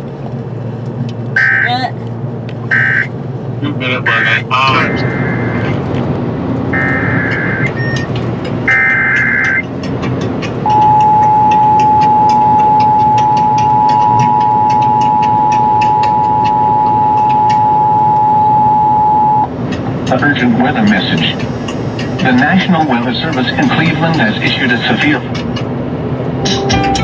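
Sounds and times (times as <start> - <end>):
warbling data tones: 6.7 - 9.7, 10.6 - 19.5
two-tone attention signal: 6.8 - 8.1, 8.7 - 9.6, 10.6 - 19.5.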